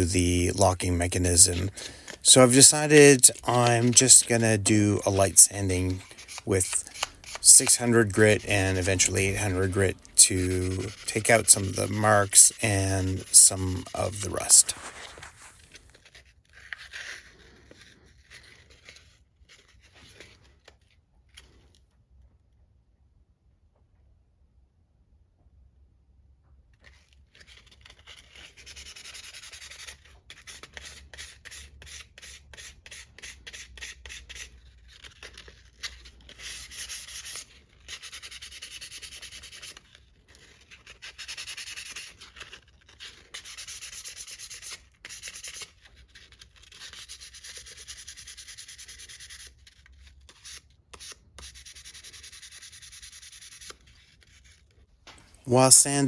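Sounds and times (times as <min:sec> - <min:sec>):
sandpaper rubbing on metal: 0:00.0 - 0:15.6.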